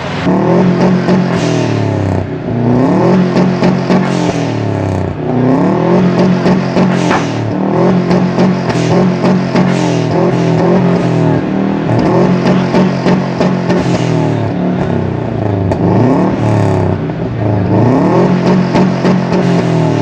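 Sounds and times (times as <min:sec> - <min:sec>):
car engine revving: 0:00.0 - 0:20.0
exhaust pops: 0:00.2 - 0:20.0.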